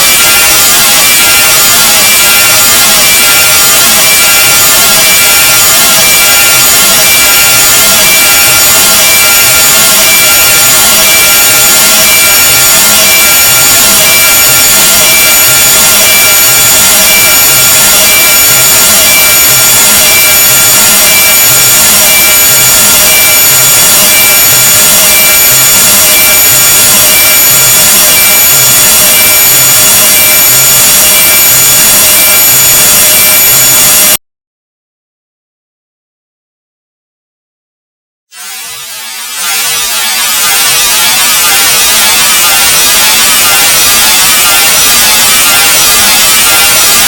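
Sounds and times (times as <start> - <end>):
high-pitched tones: 0.0 - 34.2, 38.4 - 47.0
harsh grating noise: 38.3 - 47.0.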